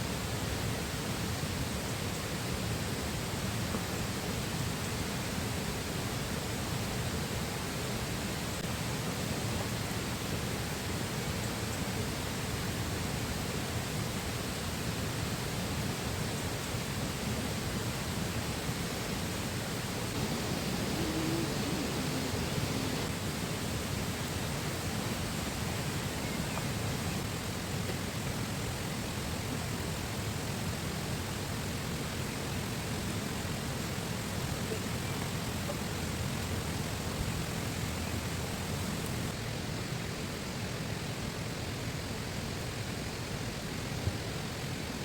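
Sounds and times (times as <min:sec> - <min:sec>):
river rushing: 0:20.1 - 0:25.9.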